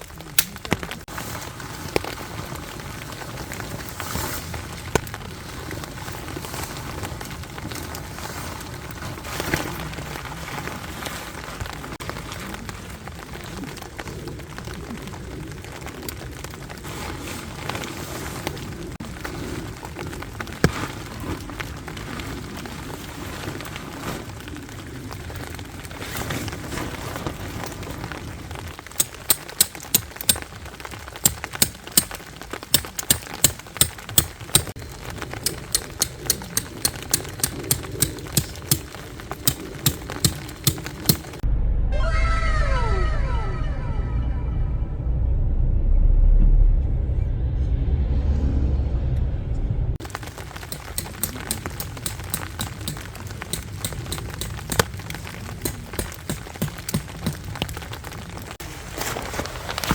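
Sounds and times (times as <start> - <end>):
rain pattering on a tent: 0.0 - 41.4, 50.0 - 59.9
sharp irregular taps: 29.0 - 30.5, 32.8 - 34.8, 35.4 - 38.9, 39.5 - 41.4, 50.7 - 54.9, 55.6 - 57.5.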